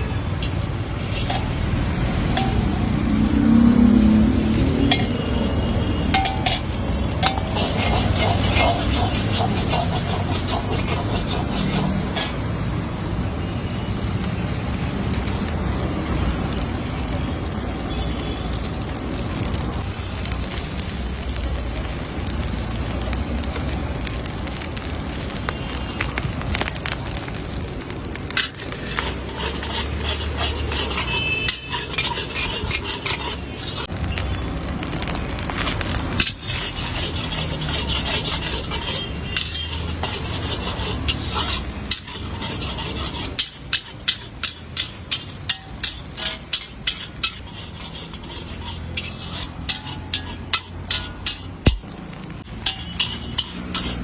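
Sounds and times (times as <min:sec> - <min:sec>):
metal spatula scraping a wok: 0:00.0 - 0:12.8, 0:27.6 - 0:33.9, 0:35.0 - 0:54.0
rice sizzling in a wok: 0:00.0 - 0:54.0.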